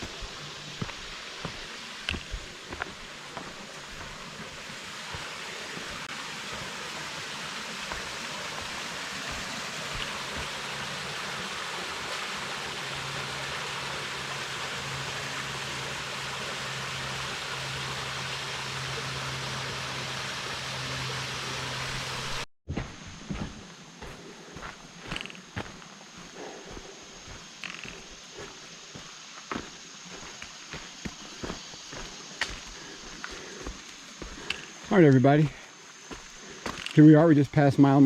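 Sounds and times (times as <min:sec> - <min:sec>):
creek water rushing over falls: 0:00.0 - 0:22.4.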